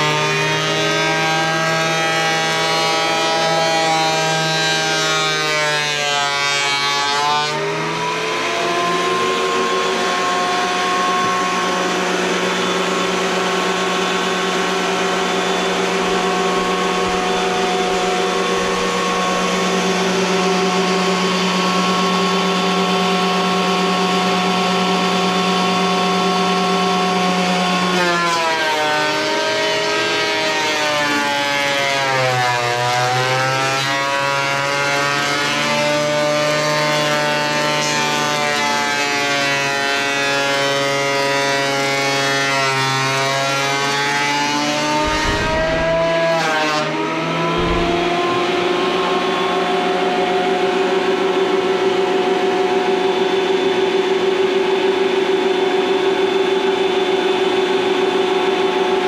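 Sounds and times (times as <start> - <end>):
thickness planer whining: 0.0 - 59.0.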